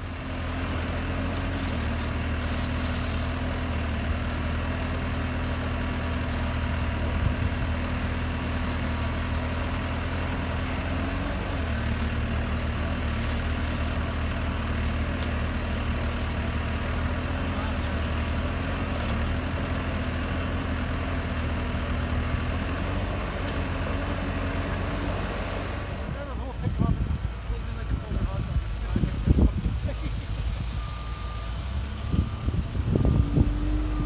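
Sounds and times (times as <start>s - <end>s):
diesel engine rumbling: 0.0s - 34.0s.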